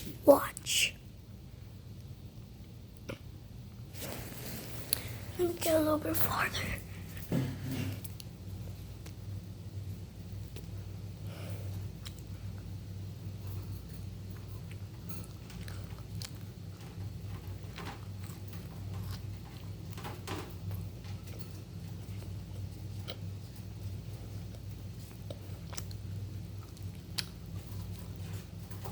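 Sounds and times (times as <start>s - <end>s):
steady low hum: 0.0s - 28.9s.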